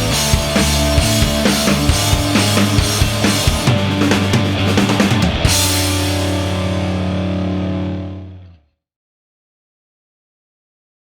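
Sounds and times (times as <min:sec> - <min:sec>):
rock music with drums and guitar: 0:00.0 - 0:08.5.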